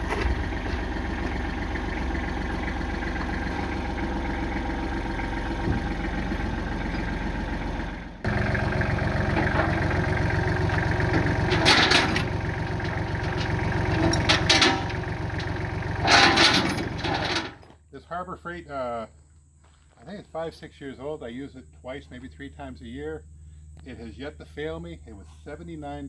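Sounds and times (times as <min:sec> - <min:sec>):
engine running: 0:00.0 - 0:17.8.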